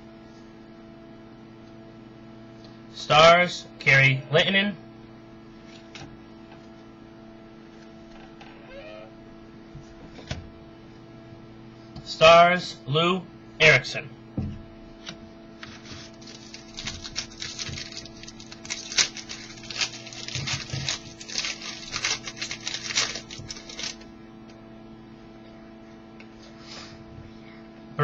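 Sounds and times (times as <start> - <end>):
low electrical hum: 0.0 - 28.0
cards clicking and rustling: 15.6 - 24.1.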